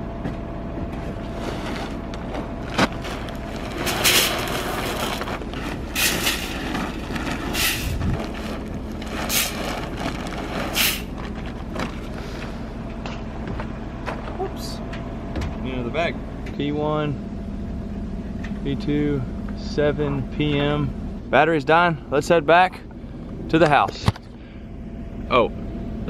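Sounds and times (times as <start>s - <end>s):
vehicle engine running: 0.0s - 26.0s.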